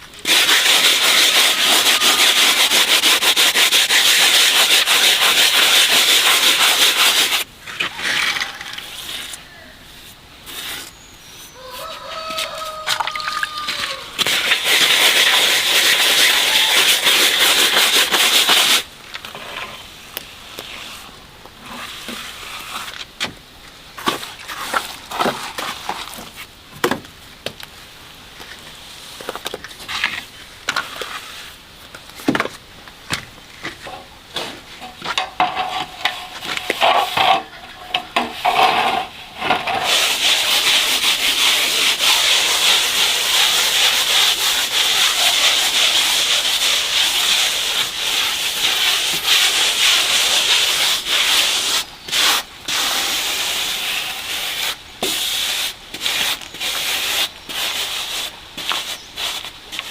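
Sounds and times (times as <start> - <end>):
hand tool scraping hard surface: 0.2 - 9.4, 10.0 - 19.9, 33.6 - 59.9.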